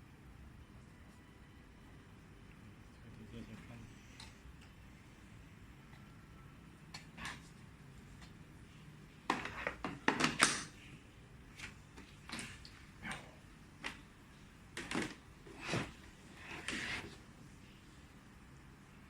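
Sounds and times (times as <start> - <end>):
plastic scraping: 14.8 - 17.2.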